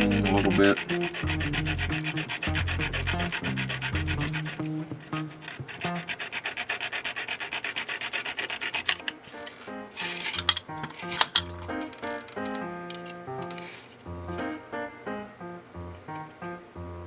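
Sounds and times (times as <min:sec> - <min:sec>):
background music: 0:00.0 - 0:06.1, 0:09.0 - 0:17.0
saw cutting plastic: 0:00.0 - 0:11.4.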